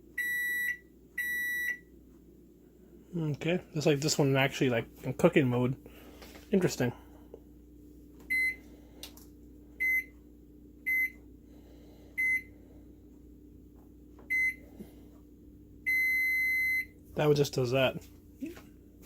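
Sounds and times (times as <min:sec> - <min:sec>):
steady low hum: 0:00.0 - 0:19.0
microwave oven beeps: 0:00.1 - 0:01.9, 0:08.2 - 0:08.7, 0:09.8 - 0:10.2, 0:10.8 - 0:11.3, 0:12.2 - 0:12.6, 0:14.2 - 0:14.7, 0:15.8 - 0:17.0.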